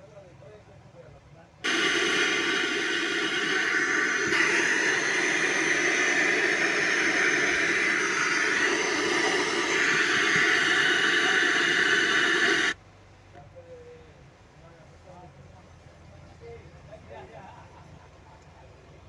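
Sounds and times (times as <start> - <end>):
loud hissing speaker sound: 1.6 - 12.8.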